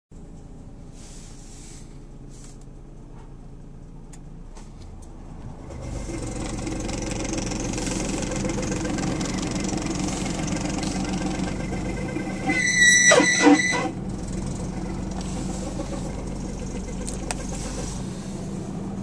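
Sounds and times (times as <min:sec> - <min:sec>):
car engine running: 0:00.1 - 0:19.0
belt-like engine noise: 0:05.3 - 0:19.0.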